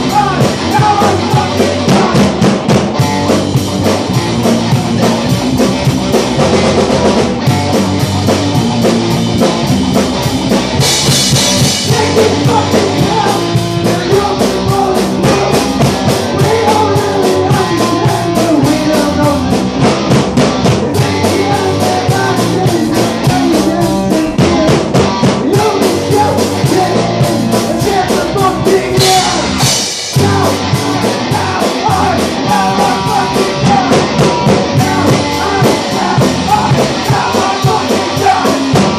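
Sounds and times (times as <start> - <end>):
person singing: 0.0 - 2.4, 11.8 - 20.1, 20.7 - 38.9
loud driving drum kit: 0.0 - 38.9
punk rock band playing: 0.0 - 38.9.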